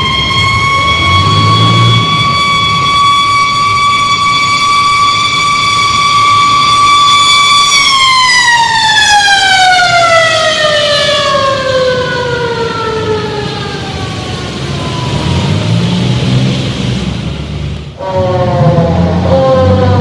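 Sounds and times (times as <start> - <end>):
low vehicle rumble: 0.0 - 4.7, 9.9 - 20.0
emergency vehicle siren: 0.0 - 20.0.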